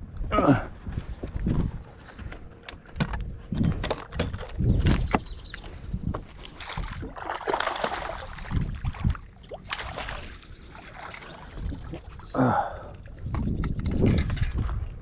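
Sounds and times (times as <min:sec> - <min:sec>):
water splashing: 0:06.5 - 0:12.2.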